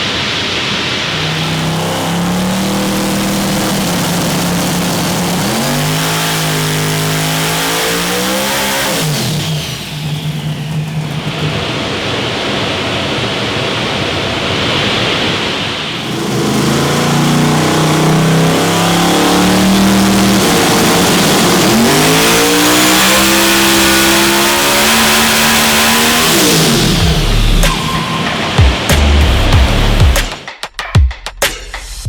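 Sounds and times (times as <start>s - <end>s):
car engine revving on dyno: 0.0s - 13.7s, 15.9s - 30.4s.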